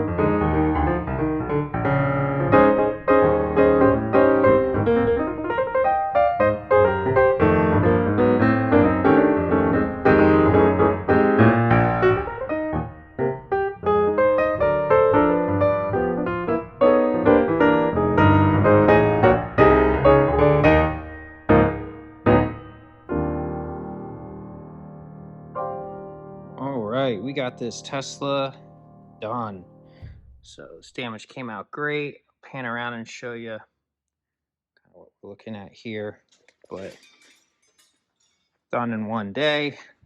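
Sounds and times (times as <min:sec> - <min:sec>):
piano music: 0:00.0 - 0:30.5.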